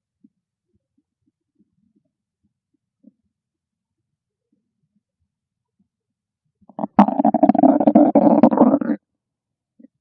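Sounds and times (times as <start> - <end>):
stomach growling: 6.7 - 9.0.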